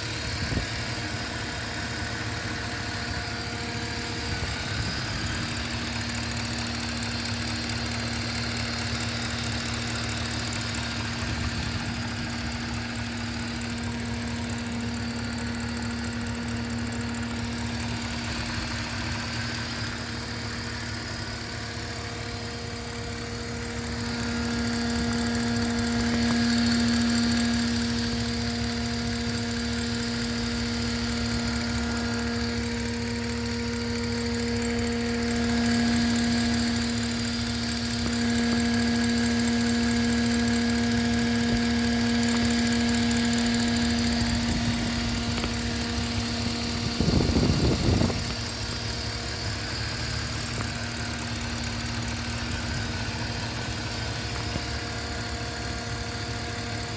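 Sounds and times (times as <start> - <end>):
car engine idling with whine: 0.0 - 56.9
fine ticking in engine: 0.0 - 56.9.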